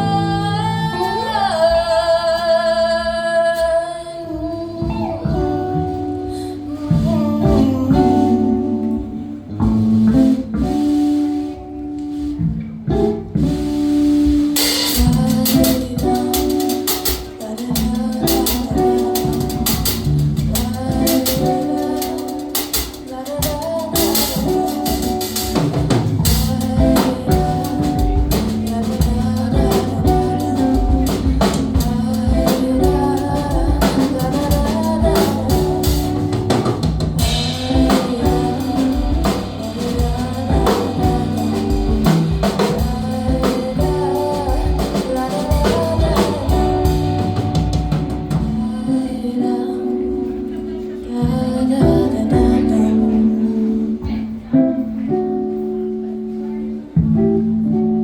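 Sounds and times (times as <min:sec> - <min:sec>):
song with singing over instruments: 0:00.0 - 0:12.3, 0:12.9 - 0:54.5
drum kit: 0:04.8 - 0:48.8.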